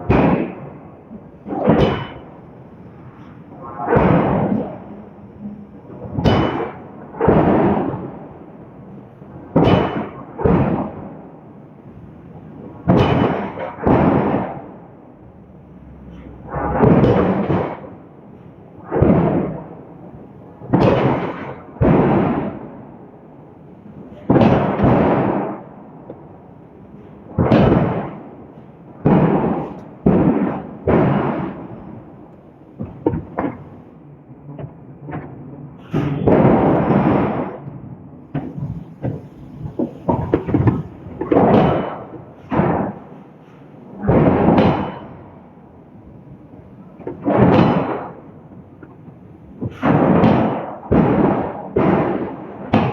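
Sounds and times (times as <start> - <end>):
forging hammer striking steel: 0.0 - 0.8, 1.4 - 8.1, 9.6 - 11.1, 12.9 - 14.6, 15.5 - 18.5.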